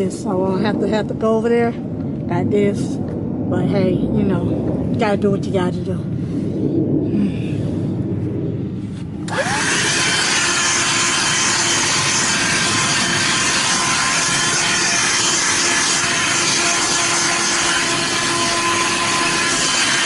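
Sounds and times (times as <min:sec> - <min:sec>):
vacuum cleaner running: 0:09.3 - 0:20.0.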